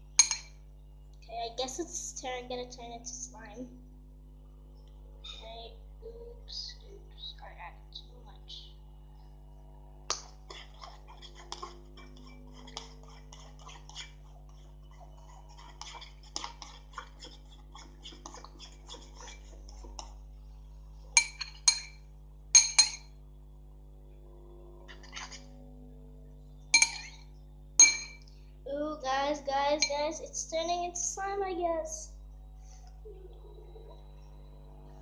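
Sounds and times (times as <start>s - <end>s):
spoon clinking against bowl: 0.2s - 0.6s, 21.2s - 22.0s, 22.6s - 23.1s, 26.8s - 27.2s, 27.8s - 28.2s
spoon stirring slime: 10.1s - 20.4s, 21.1s - 22.0s, 26.8s - 27.2s.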